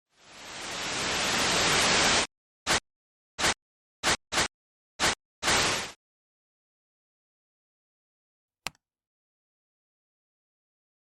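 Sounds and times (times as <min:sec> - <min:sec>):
static hiss: 0:00.1 - 0:02.8, 0:05.0 - 0:06.0
short static bursts: 0:00.4 - 0:02.8, 0:03.4 - 0:06.0.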